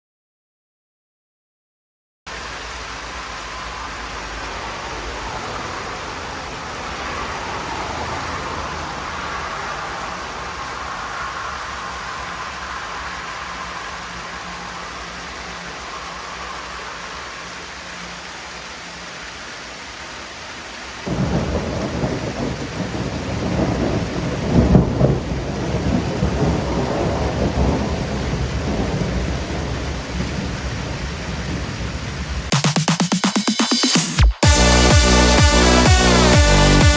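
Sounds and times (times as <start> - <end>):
steady rain: 2.3 - 36.9
rolling thunder: 21.1 - 32.5.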